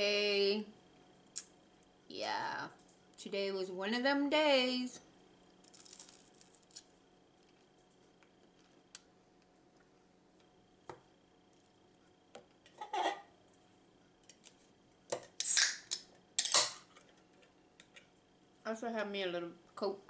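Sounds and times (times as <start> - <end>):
food crunching: 5.4 - 10.6.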